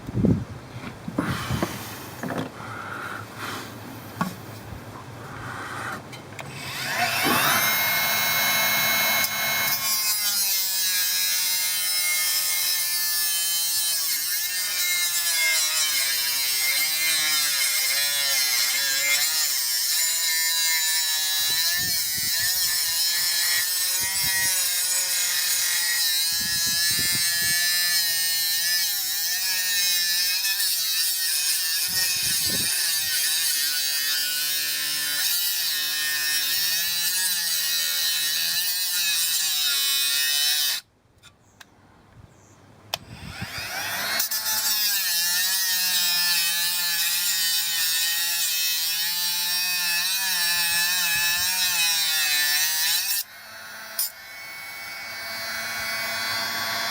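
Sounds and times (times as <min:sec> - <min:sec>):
angle grinder whining: 0:05.9 - 0:13.4, 0:43.0 - 0:56.9.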